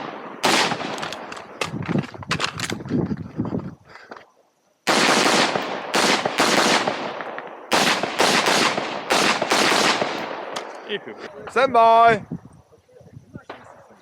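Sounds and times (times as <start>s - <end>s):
rifle shots with echo: 0.0s - 1.7s, 4.9s - 10.8s.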